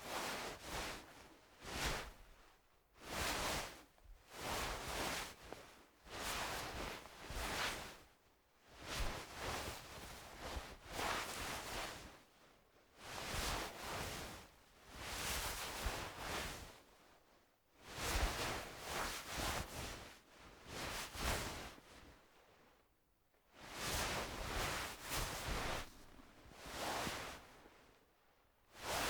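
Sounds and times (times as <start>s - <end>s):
clothing fabric rustling: 23.7s - 27.9s.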